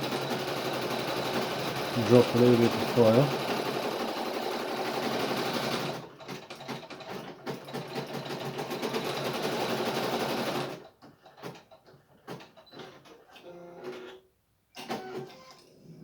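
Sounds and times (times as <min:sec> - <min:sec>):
embroidery machine needle running: 0:00.0 - 0:10.8.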